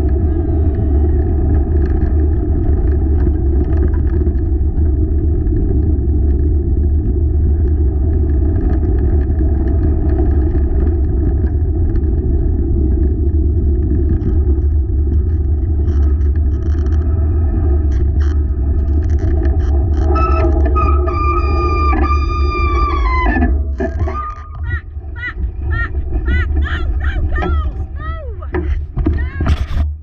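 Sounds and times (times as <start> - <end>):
wheels rumbling on a trail: 0.0 - 30.0
wind on microphone: 0.0 - 30.0
sharp rattles: 17.8 - 30.0.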